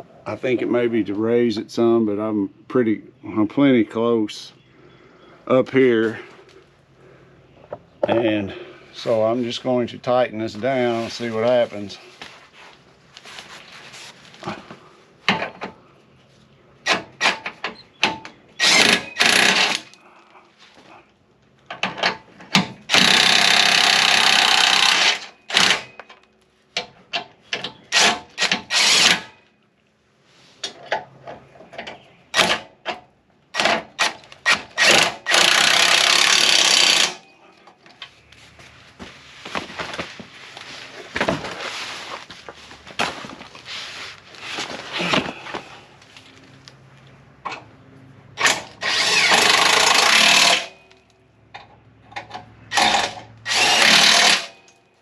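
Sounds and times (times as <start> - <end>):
impact wrench bursts: 16.8 - 19.9, 22.9 - 26.0, 27.9 - 29.4, 33.5 - 37.3, 48.4 - 50.8, 52.7 - 54.6.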